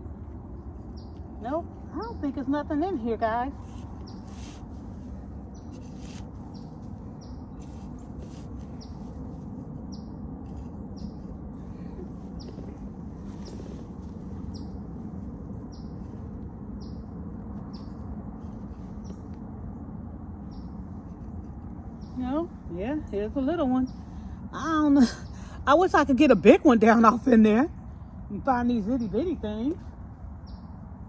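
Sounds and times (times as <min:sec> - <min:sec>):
low background rumble: 0:00.0 - 0:31.0
bird chirping: 0:00.8 - 0:09.2, 0:09.9 - 0:11.3, 0:15.6 - 0:19.3
rustling: 0:03.5 - 0:16.5.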